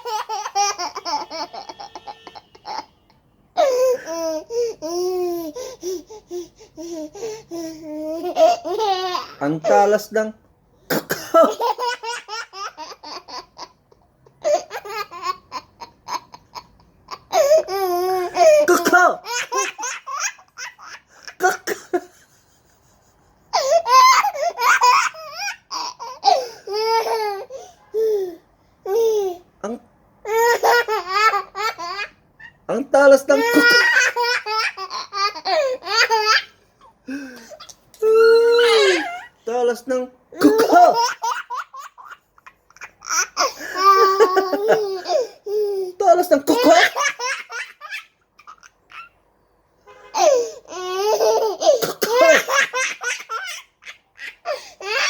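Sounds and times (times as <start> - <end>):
baby laughing and squealing: 0.0 - 2.9, 3.6 - 9.9, 23.5 - 29.4, 33.3 - 36.6, 37.6 - 39.4, 40.4 - 46.0, 46.6 - 49.2, 50.2 - 55.0.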